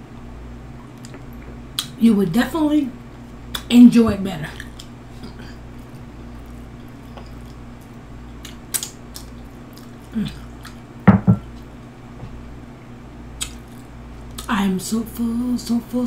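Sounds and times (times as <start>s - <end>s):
steady low hum: 0.0s - 16.0s
wet chewing and mouth noises: 4.6s - 10.9s, 13.4s - 14.5s
sharp mouth clicks: 8.4s - 10.8s, 13.4s - 14.5s
person humming mm: 10.1s - 10.5s.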